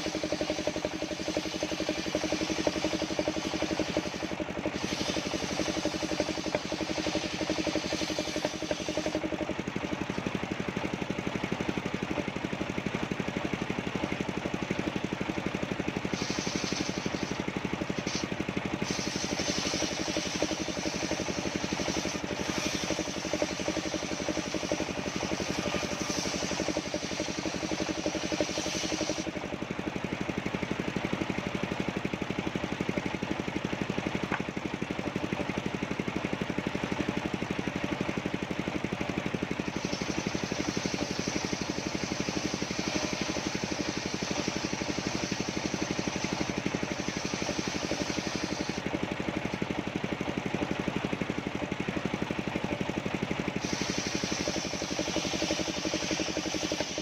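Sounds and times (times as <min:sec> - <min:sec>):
saw blade cutting wood hiss: 0:00.0 - 0:09.4, 0:16.0 - 0:29.4, 0:39.6 - 0:48.8, 0:53.5 - 0:57.0
sawmill engine running: 0:00.0 - 0:57.0.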